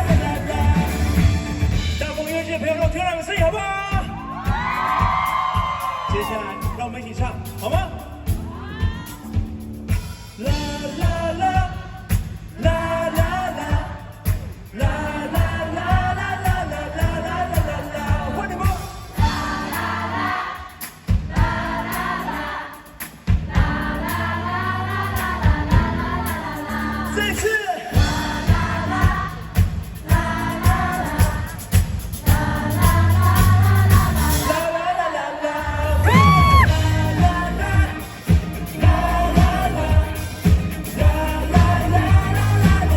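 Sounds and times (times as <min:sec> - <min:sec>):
person singing: 0:00.0 - 0:01.4, 0:32.3 - 0:42.9
steady kick drum: 0:00.0 - 0:19.7, 0:21.1 - 0:21.8, 0:23.3 - 0:24.1, 0:25.4 - 0:26.2, 0:28.0 - 0:34.4, 0:36.1 - 0:42.9
pop-rock band playing: 0:00.0 - 0:34.7, 0:36.0 - 0:42.9.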